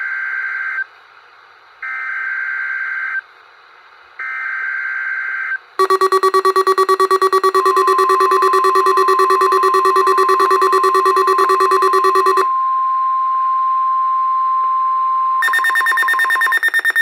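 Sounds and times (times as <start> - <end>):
warbling digital data bursts: 5.8 - 12.4, 15.4 - 17.0
rapid buzzy alarm beeping: 5.8 - 12.5, 15.4 - 17.0
steady warning tone: 5.8 - 17.0.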